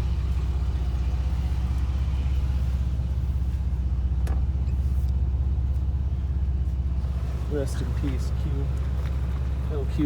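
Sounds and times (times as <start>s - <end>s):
car engine rumble: 0.0s - 10.0s
road noise inside car: 0.0s - 10.0s.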